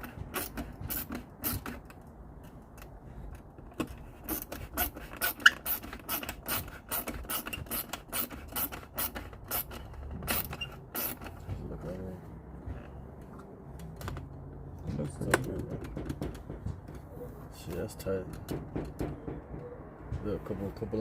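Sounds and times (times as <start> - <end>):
hand ratchet clicking: 4.3 - 11.4.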